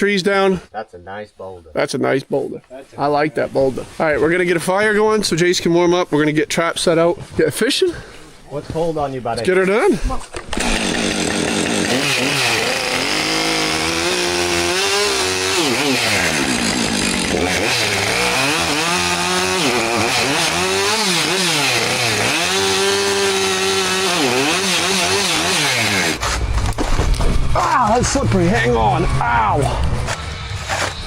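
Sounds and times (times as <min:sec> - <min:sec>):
chainsaw revving: 0:10.3 - 0:26.3.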